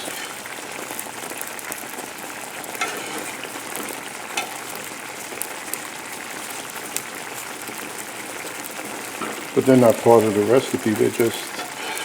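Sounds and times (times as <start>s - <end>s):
food sizzling in a pan: 0.0s - 12.0s.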